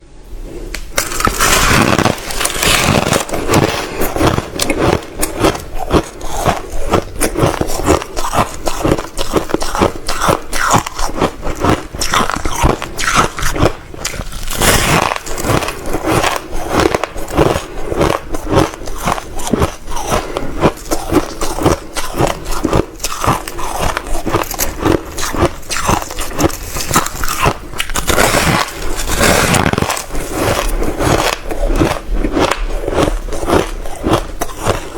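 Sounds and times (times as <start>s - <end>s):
crushed ice being chewed: 1.0s - 34.9s.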